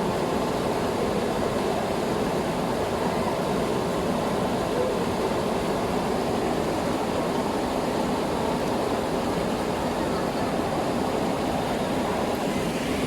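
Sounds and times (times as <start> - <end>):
river water flowing: 0.0 - 13.0.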